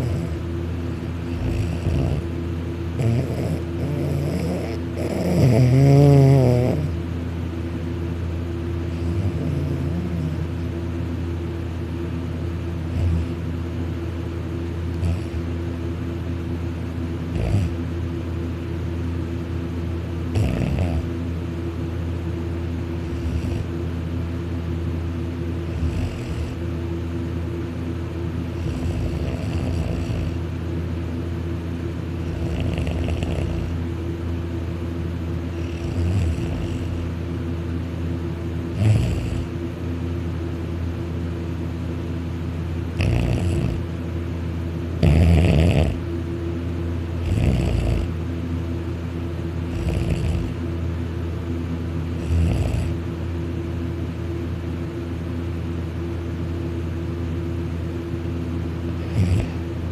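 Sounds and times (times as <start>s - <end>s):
man snoring loudly: 0.0s - 0.4s, 1.3s - 2.3s, 3.0s - 7.0s, 8.9s - 10.5s, 12.9s - 13.4s, 14.9s - 15.5s, 17.3s - 17.8s, 20.3s - 21.1s, 23.0s - 23.7s, 25.6s - 26.6s, 28.5s - 30.4s, 32.2s - 33.8s, 35.5s - 37.1s, 38.7s - 39.5s, 43.0s - 43.9s, 45.0s - 46.0s, 47.2s - 48.2s, 49.7s - 50.6s, 52.2s - 53.0s, 59.0s - 59.7s
steady low hum: 0.0s - 59.9s.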